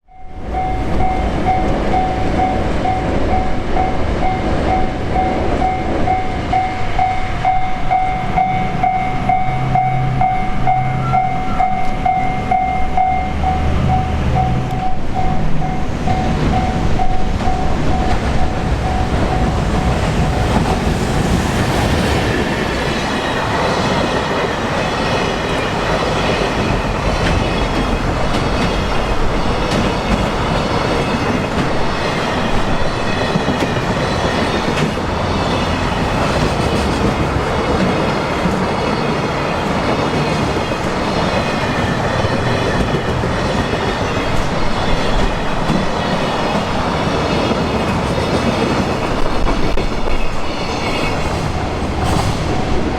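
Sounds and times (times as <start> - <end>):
crossing warning bell: 0.0 - 20.9, 22.2 - 36.2, 37.4 - 52.9
freight train rumbling over rails: 0.0 - 52.9
clickety-clack over rail joints: 13.3 - 52.9.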